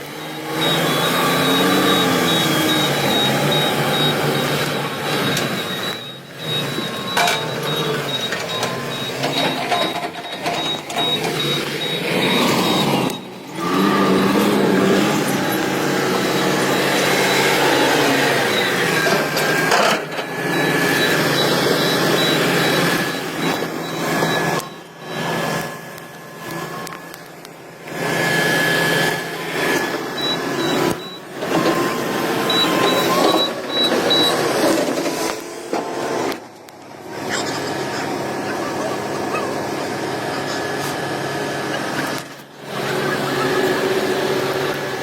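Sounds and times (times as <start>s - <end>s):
diesel engine revving: 0.0s - 45.0s
fast high warning beeps: 0.1s - 27.3s, 28.4s - 34.9s.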